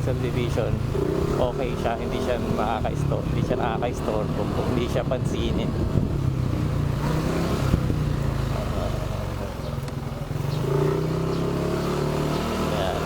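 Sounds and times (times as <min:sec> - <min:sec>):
motor scooter engine drone: 0:00.0 - 0:13.0.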